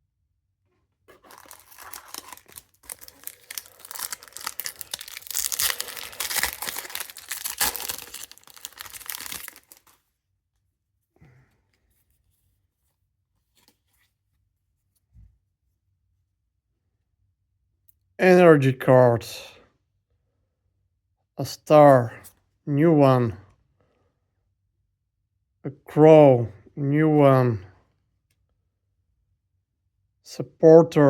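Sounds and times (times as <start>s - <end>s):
faint handling sounds: 1.0s - 10.0s, 10.6s - 15.8s
wrapper tearing and crinkling: 1.1s - 10.0s.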